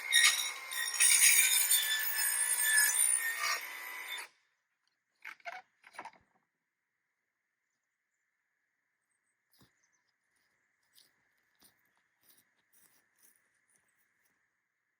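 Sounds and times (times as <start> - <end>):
hand tool rasping and scraping: 0.0 - 4.2.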